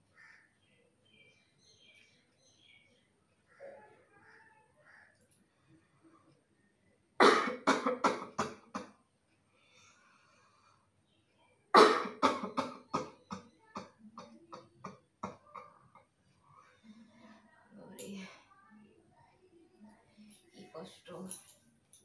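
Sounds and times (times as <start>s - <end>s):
person coughing: 7.2s - 8.9s.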